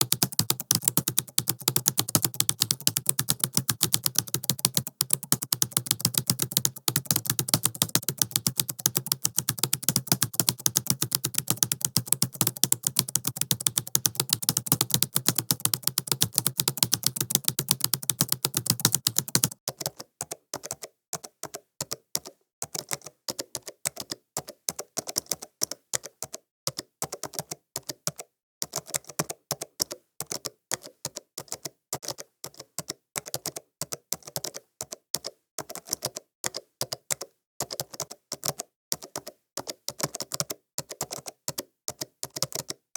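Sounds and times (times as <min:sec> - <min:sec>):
keyboard typing clicks: 0:00.0 - 0:19.6.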